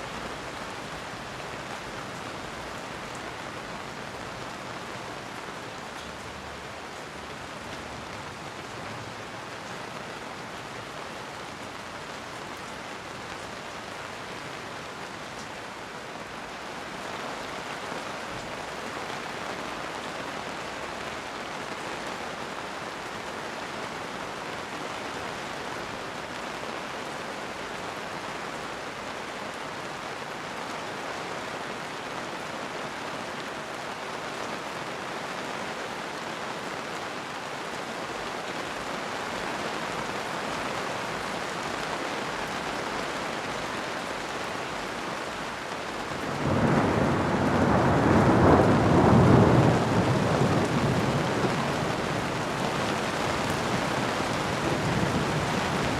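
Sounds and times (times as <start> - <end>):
steady rain falling: 0.0 - 55.9
thunder rumbling: 46.2 - 55.9.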